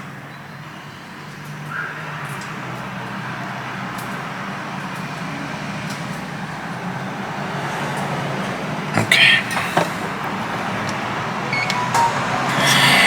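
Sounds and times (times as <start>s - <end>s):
hot air station hissing: 7.3s - 13.0s.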